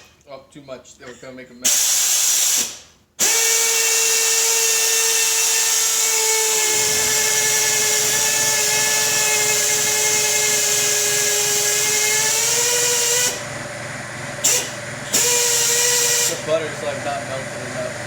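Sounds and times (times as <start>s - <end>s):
power drill whining: 2.1s - 13.5s, 14.4s - 17.2s.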